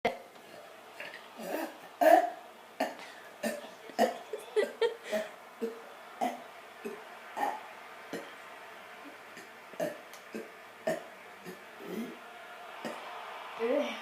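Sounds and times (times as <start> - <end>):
person burping: 1.4 - 8.3, 9.4 - 12.2.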